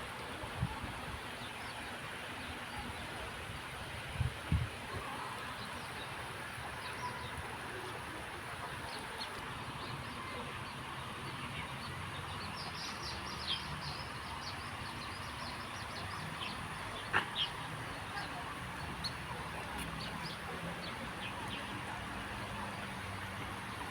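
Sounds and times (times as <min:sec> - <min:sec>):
steady outdoor hiss: 0:00.0 - 0:23.9
birds chirping: 0:05.6 - 0:23.9.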